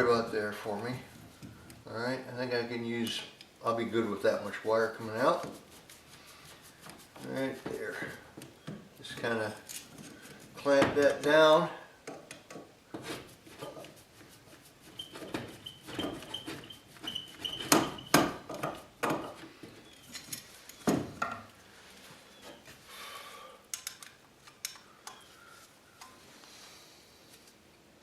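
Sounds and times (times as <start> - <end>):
metallic clicks and knocks: 23.7 - 25.2.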